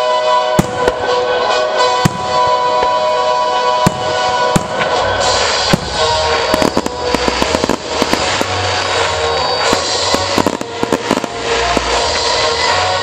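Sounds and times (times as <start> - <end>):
fireworks bangs and crackles: 0.0 - 13.0
music playing: 0.0 - 13.0.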